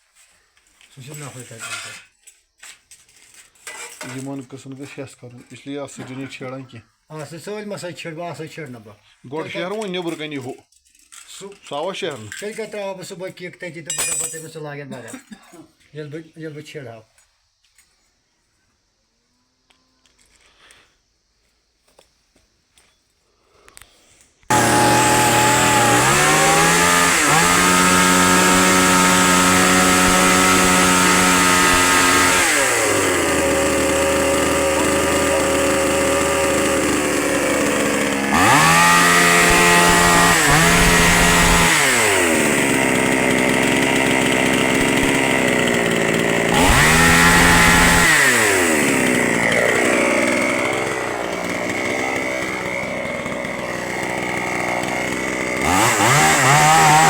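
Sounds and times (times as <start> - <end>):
chainsaw engine revving: 24.5 - 57.0.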